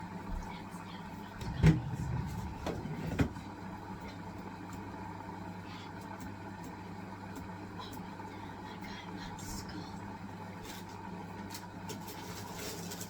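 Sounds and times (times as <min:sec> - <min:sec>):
washing machine motor hum: 0:00.0 - 0:13.0
washing machine knocks: 0:01.4 - 0:03.5.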